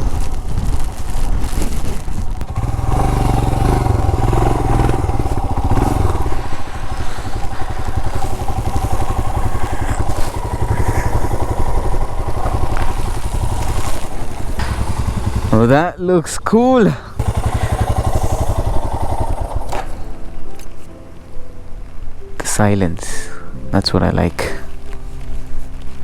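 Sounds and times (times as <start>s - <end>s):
single-cylinder engine running: 0.0s - 20.8s.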